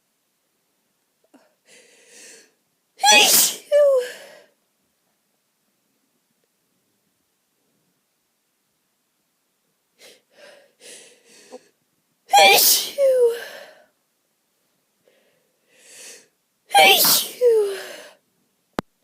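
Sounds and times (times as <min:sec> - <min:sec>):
person sneezing: 0:03.0 - 0:04.4, 0:12.3 - 0:13.6, 0:16.7 - 0:18.2.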